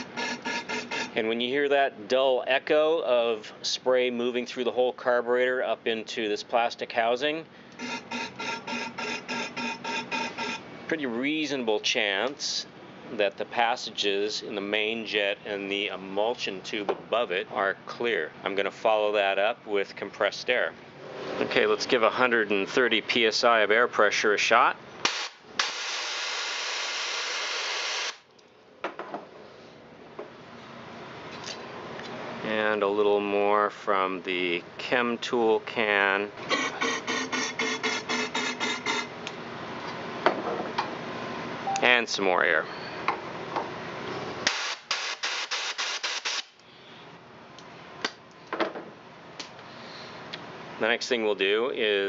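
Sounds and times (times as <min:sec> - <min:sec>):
compressed air blasts: 0:07.8 - 0:10.6, 0:25.0 - 0:28.2, 0:44.4 - 0:46.6.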